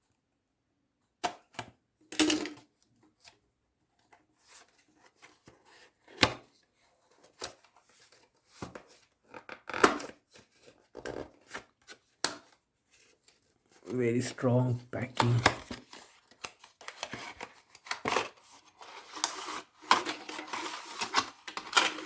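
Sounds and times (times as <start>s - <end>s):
packaging being opened by hand: 15.0s - 22.0s.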